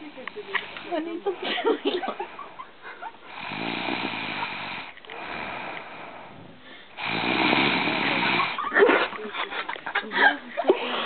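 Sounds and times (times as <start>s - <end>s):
quiet breath: 0.0s - 8.7s
heavy buzzing snoring: 3.3s - 8.8s.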